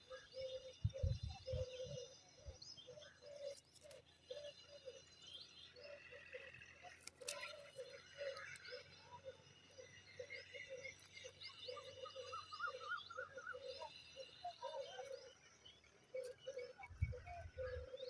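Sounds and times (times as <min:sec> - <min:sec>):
faint low bird calls: 0:00.0 - 0:18.0
high rising bird chirps: 0:00.0 - 0:18.0
small clicks: 0:06.9 - 0:08.7.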